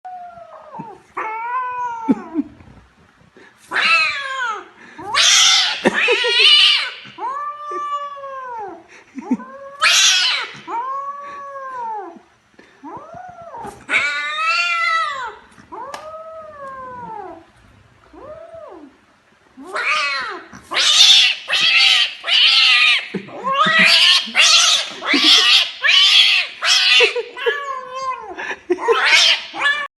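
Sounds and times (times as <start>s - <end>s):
cat yowling: 3.7s - 8.8s, 9.6s - 12.2s, 19.6s - 29.9s.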